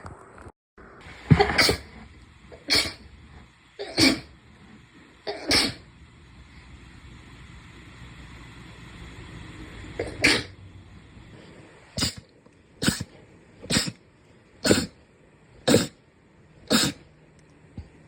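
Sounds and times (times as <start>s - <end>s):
short sharp sneezes: 1.3s - 1.9s, 2.6s - 3.0s, 12.0s - 14.0s, 14.6s - 15.0s, 16.7s - 17.1s.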